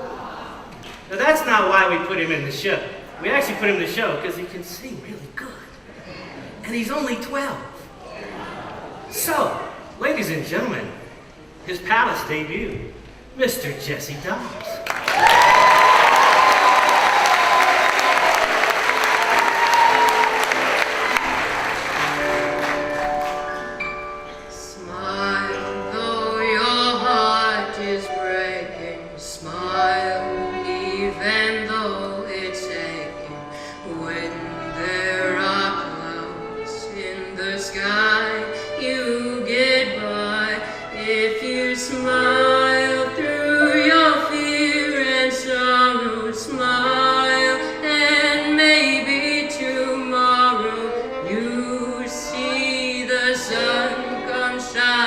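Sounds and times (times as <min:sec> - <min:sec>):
instrumental accompaniment: 0:17.5 - 0:29.0
boy singing: 0:24.5 - 0:55.0.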